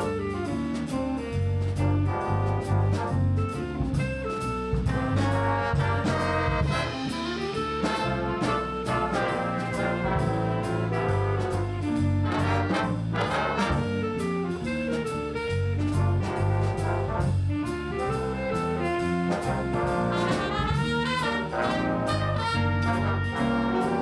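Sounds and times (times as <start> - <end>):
bass line: 0.0 - 24.0
drum strokes: 0.0 - 24.0
brass section playing: 1.2 - 24.0.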